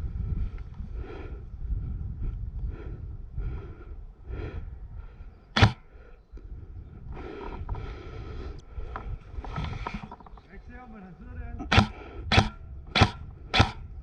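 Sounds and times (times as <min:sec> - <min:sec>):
camera rustling: 0:05.6 - 0:05.8, 0:07.2 - 0:10.8, 0:11.7 - 0:13.8
sharp crack: 0:05.6 - 0:05.9, 0:11.7 - 0:13.9.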